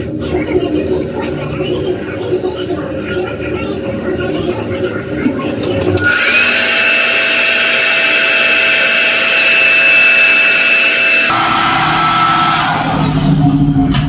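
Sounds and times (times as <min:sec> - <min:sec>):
hair dryer blowing: 0:05.9 - 0:13.3.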